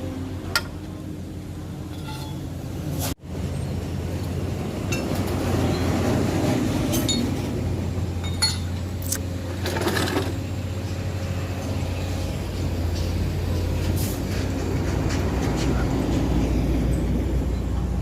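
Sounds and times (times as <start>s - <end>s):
metal tools clinking: 1.9s - 2.5s, 8.2s - 8.8s.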